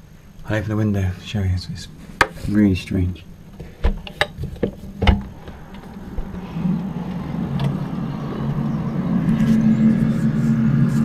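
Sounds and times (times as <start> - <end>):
low droning hum: 0.0 - 11.0
window opening clicks and knocks: 3.8 - 5.9.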